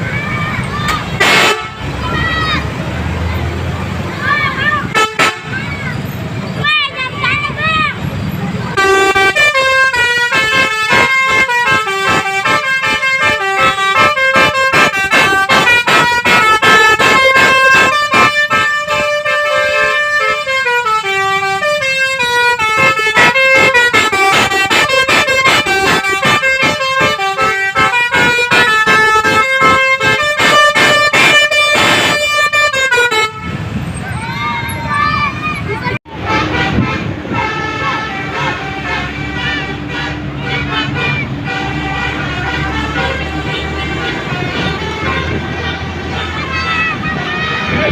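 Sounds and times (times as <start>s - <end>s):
bus horn playing melody: 1.0s - 2.0s, 4.8s - 5.6s, 8.7s - 33.8s, 36.1s - 47.9s.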